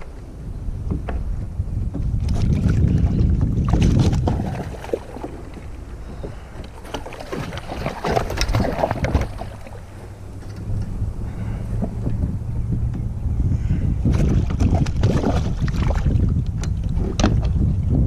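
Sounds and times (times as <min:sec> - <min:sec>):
wind buffeting microphone: 0:00.0 - 0:18.0
small knocks and splashes: 0:01.9 - 0:10.6, 0:14.1 - 0:17.6.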